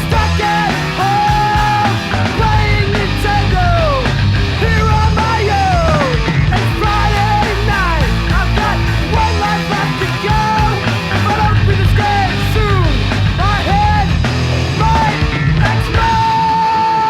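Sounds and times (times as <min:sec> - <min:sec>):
bass guitar: 0:00.0 - 0:17.0
distorted guitar: 0:00.0 - 0:17.0
drums: 0:00.0 - 0:17.0
person yelling vocals: 0:14.8 - 0:17.0.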